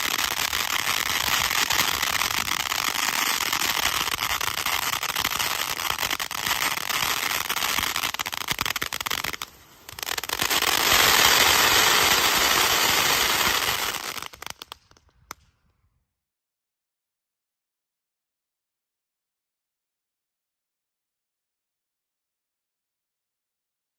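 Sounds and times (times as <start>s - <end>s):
crackling firework fountain: 0.0s - 15.5s.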